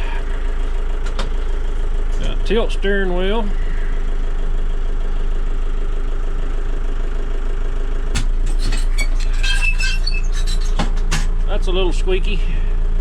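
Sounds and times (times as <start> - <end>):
diesel engine idling: 0.0 - 13.0
clunk: 8.1 - 11.5
clicks and squeaks in cab: 8.2 - 11.5.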